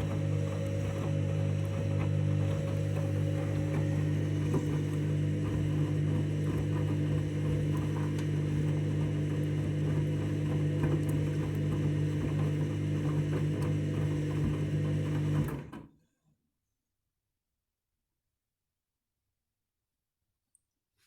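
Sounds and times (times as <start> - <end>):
washing machine motor hum: 0.0 - 15.8.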